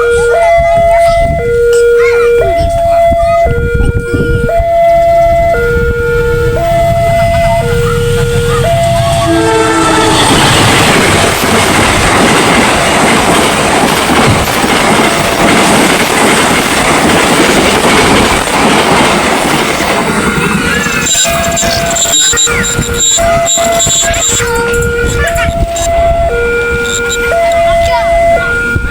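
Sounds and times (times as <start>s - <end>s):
level crossing siren: 0.0s - 28.9s
train rumbling past: 0.0s - 28.9s
wheels clattering on rails: 6.4s - 28.9s.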